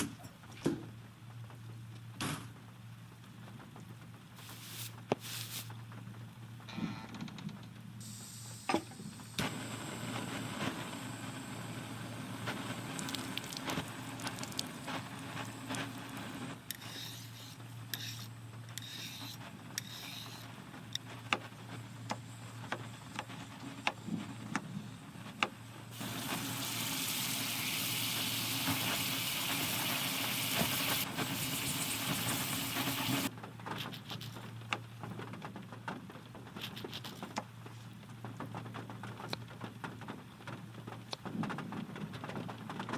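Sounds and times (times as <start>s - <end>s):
bright hiss of rain: 4.4s - 5.8s, 25.9s - 33.3s.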